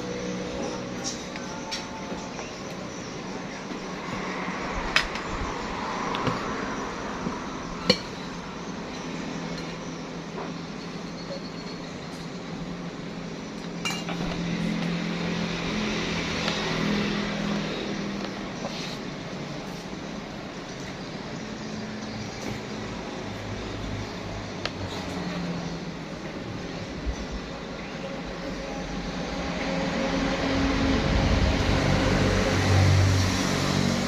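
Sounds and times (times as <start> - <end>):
steady background hum: 0.0 - 34.0
dishes or cutlery clinking: 13.8 - 14.3.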